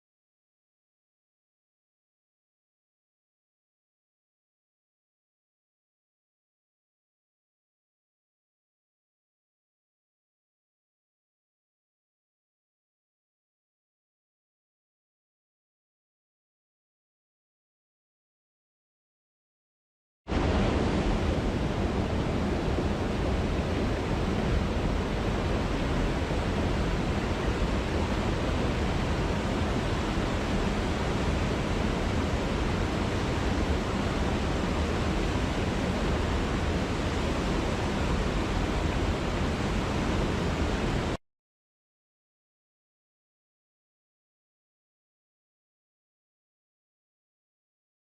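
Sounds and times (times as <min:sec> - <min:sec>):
steady rushing noise: 0:20.3 - 0:41.2.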